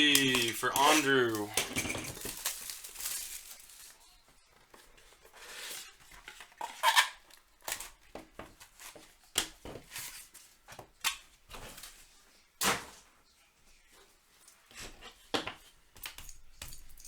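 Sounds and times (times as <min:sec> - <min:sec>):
trading cards and packaging handled: 0:00.0 - 0:10.6.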